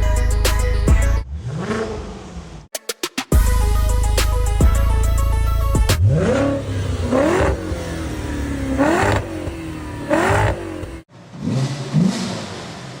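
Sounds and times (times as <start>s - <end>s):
car engine revving: 0.0s - 2.7s, 4.2s - 13.0s
car engine idling: 3.4s - 11.3s.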